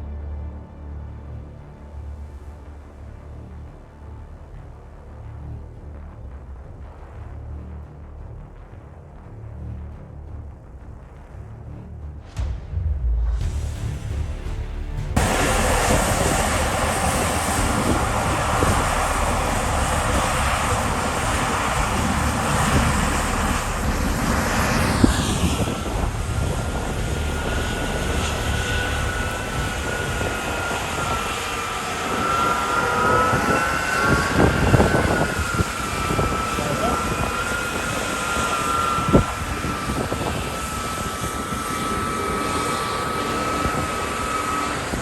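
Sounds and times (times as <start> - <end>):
high machine whine: 13.4 - 45.0
combine harvester running: 13.6 - 45.0.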